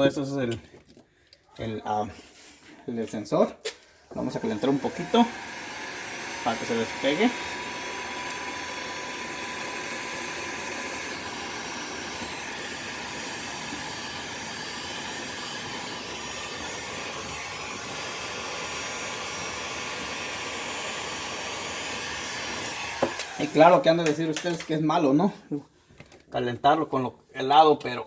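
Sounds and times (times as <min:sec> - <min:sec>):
hot-air blower running: 0:04.1 - 0:24.7.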